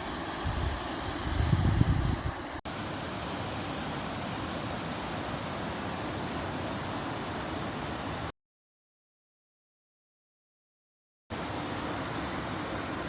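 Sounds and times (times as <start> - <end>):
waterfall rushing: 0.0 - 2.6.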